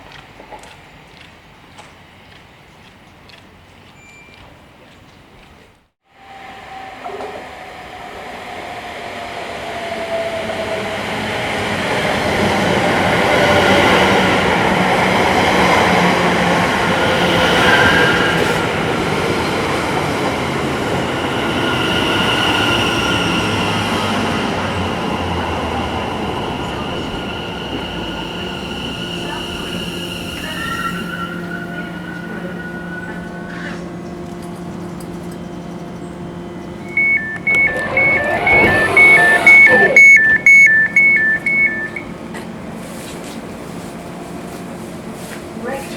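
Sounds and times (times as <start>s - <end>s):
electric train rumbling on rails: 6.1s - 45.9s
high wheel squeal: 20.9s - 33.9s, 36.8s - 42.0s.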